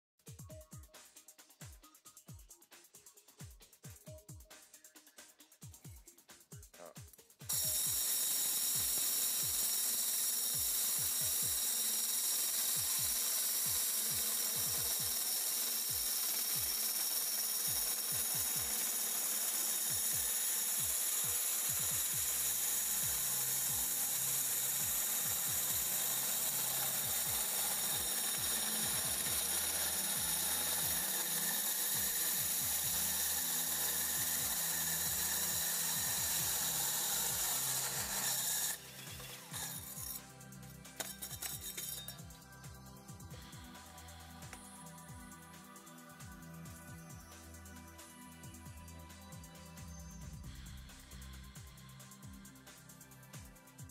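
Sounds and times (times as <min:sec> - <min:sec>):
power drill grinding through brick: 0:07.5 - 0:42.4.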